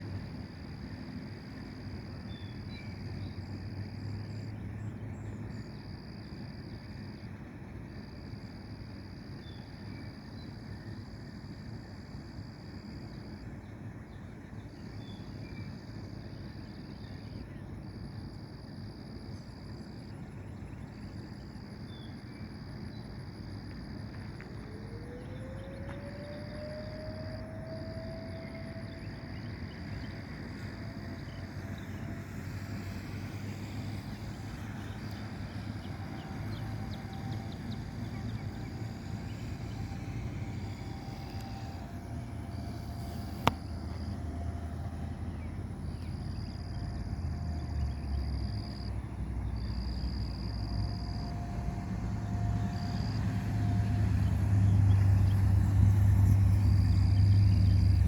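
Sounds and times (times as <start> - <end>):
low vehicle rumble: 0.0 - 58.0
insects trilling: 0.1 - 58.0.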